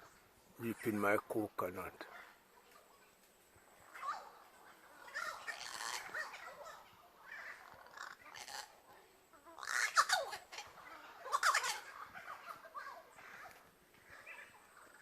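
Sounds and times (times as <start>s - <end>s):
crows calling harshly: 5.0s - 15.0s.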